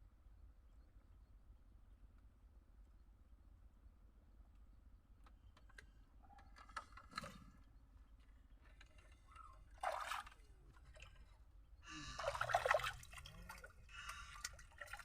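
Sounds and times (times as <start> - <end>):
water splashing and dripping: 9.7 - 11.2, 12.2 - 15.0.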